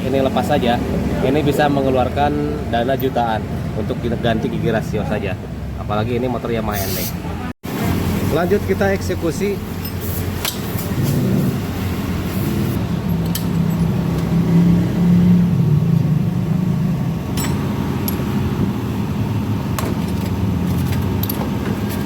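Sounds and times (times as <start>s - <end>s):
engine running: 7.7s - 22.0s.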